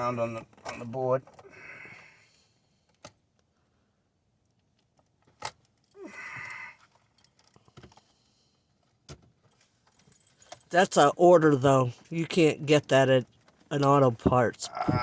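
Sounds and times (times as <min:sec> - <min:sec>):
light metallic rattles: 0:04.6 - 0:11.1.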